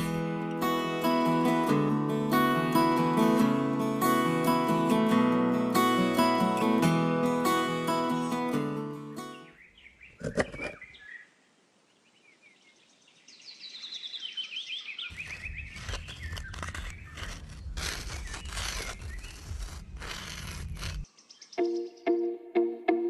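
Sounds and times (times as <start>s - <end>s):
small birds chirping: 9.3s - 22.4s
rough crackling with low rumble: 15.2s - 21.1s.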